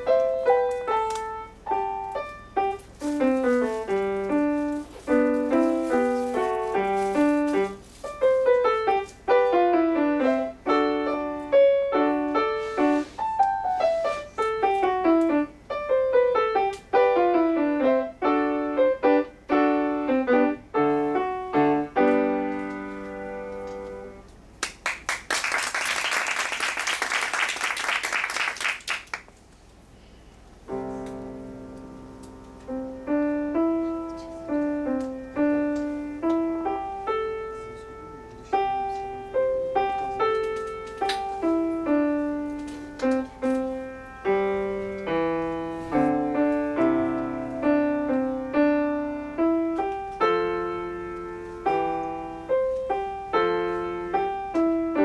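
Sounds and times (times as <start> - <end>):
solo piano melody: 0.0 - 24.5, 30.5 - 55.0
applause: 24.6 - 29.4.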